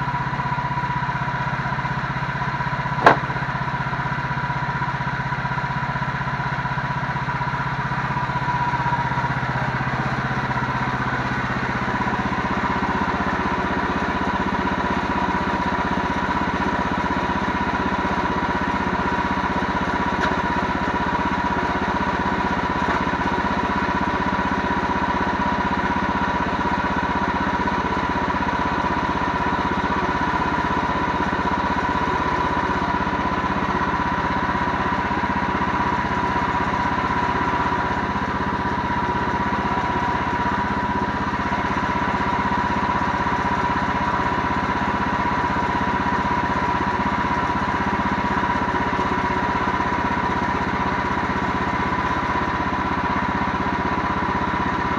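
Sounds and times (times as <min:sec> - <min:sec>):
engine running steadily: 0:00.0 - 0:54.9
steady high whine: 0:03.0 - 0:03.7.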